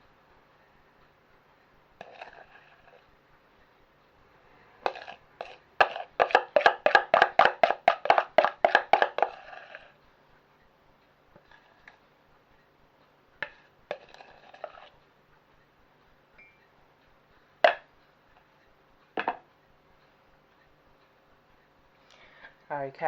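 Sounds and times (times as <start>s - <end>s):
spoon tapping against mug: 4.9s - 9.4s.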